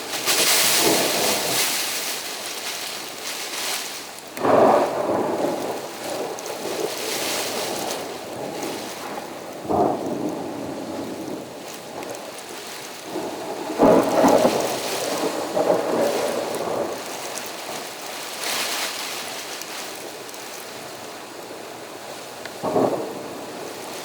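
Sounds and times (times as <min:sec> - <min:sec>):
rumbling thunderclap: 0:00.0 - 0:02.1, 0:04.4 - 0:18.4, 0:22.6 - 0:24.0
steady rain: 0:00.0 - 0:24.0.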